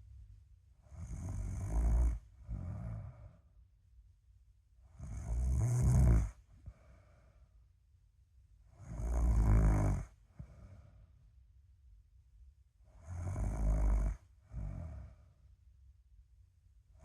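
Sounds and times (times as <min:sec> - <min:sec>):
person snoring: 0:00.9 - 0:03.4, 0:05.0 - 0:06.4, 0:08.8 - 0:10.7, 0:13.0 - 0:15.2.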